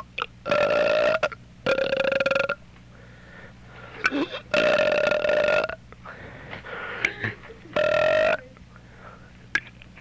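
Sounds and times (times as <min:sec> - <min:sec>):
boy burping: 0:00.2 - 0:02.6, 0:04.0 - 0:05.8, 0:07.0 - 0:08.4.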